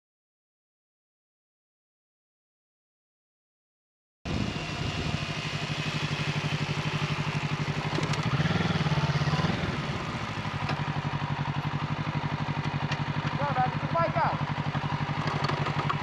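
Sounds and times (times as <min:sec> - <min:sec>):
motorcycle engine idling: 0:04.3 - 0:16.0.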